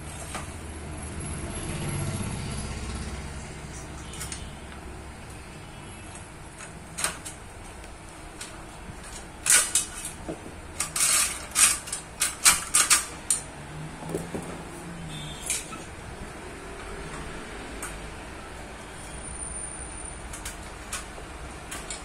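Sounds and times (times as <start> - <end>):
metallic clicks and scrapes: 3.6 - 5.4, 6.0 - 13.6, 15.3 - 16.0, 20.2 - 22.0.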